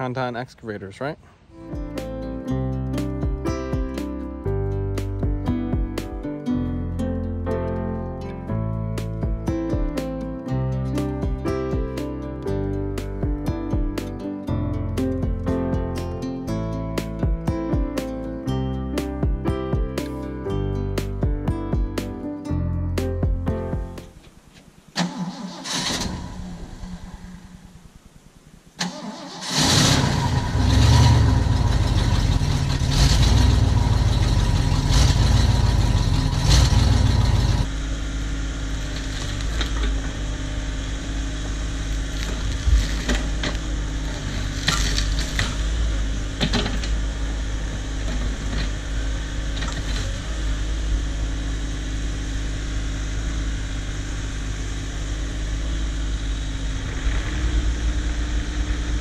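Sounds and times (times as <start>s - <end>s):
excavator diesel engine starting: 25.0s - 27.6s, 28.8s - 59.0s.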